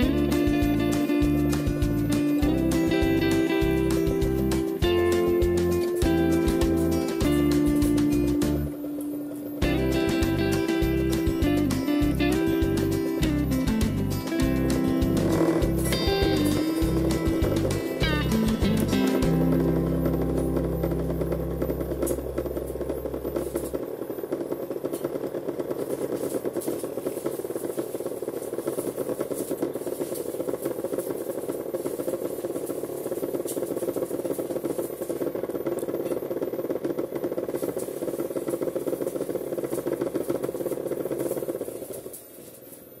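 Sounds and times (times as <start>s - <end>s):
background music: 0.0s - 23.9s
small motor buzzing rattle: 0.0s - 43.0s.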